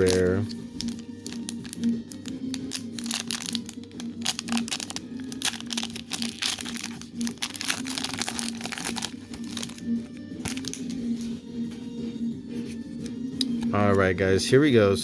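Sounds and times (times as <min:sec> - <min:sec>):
foil wrapper crinkling: 0:00.0 - 0:11.0
trading cards being handled: 0:00.0 - 0:14.0.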